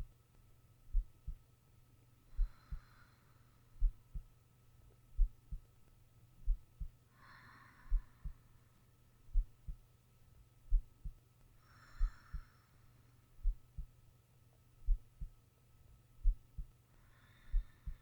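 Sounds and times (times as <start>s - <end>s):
faint steady hum: 0.0s - 18.0s
heartbeat double thump: 0.9s - 1.4s, 5.2s - 5.6s, 6.4s - 6.9s, 9.3s - 9.8s, 10.7s - 11.2s, 14.8s - 15.3s, 16.2s - 16.7s
soft breaths: 2.2s - 5.8s, 6.4s - 9.8s, 10.7s - 14.0s, 16.2s - 18.0s.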